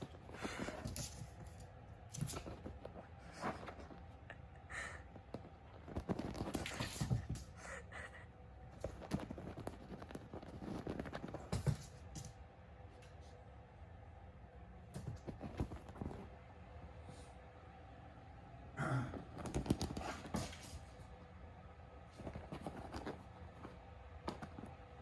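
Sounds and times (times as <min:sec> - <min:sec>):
kitten paws pattering on hard floor: 0:00.0 - 0:04.2, 0:05.2 - 0:07.7, 0:08.7 - 0:12.4, 0:14.9 - 0:16.4, 0:22.2 - 0:24.8.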